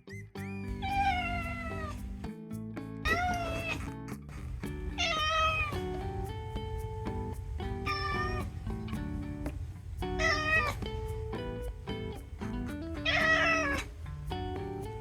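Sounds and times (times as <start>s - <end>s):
background music with plucked notes: 0.0s - 15.0s
cat meowing: 0.8s - 2.0s, 3.1s - 5.7s, 7.9s - 8.4s, 10.2s - 10.8s, 13.0s - 13.8s.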